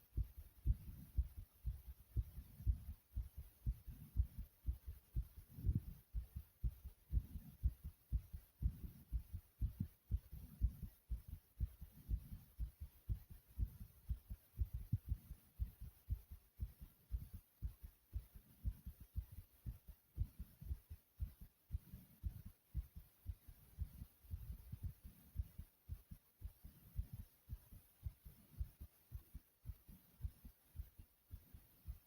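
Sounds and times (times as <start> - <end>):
heart pounding: 0.1 - 32.0.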